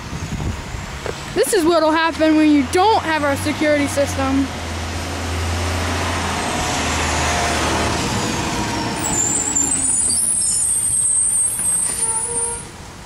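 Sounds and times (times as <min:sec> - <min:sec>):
high squeal: 0:07.9 - 0:12.8.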